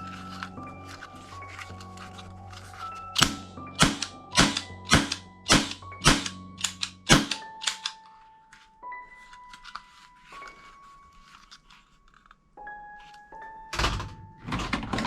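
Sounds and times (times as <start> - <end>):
toy gun shots: 3.2 - 8.0.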